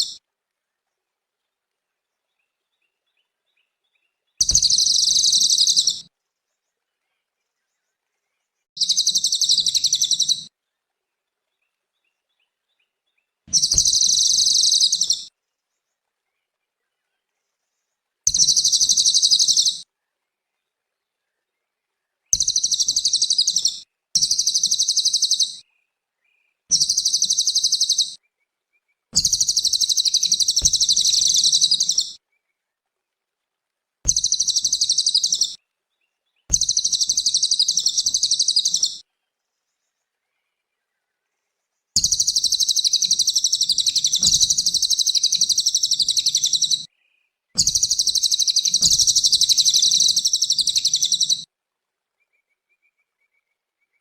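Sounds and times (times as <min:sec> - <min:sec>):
bird chattering song: 0:04.4 - 0:06.0, 0:08.8 - 0:10.5, 0:13.5 - 0:15.3, 0:18.3 - 0:19.8, 0:22.3 - 0:25.6, 0:26.7 - 0:28.2, 0:29.2 - 0:32.2, 0:34.1 - 0:35.6, 0:36.5 - 0:39.0, 0:42.0 - 0:46.9, 0:47.6 - 0:51.5.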